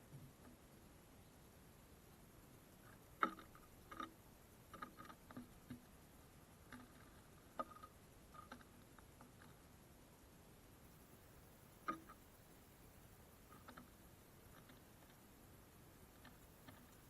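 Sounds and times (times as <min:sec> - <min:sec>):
birds pecking on feeder: 0:02.8 - 0:06.0, 0:06.6 - 0:09.7, 0:11.0 - 0:17.0.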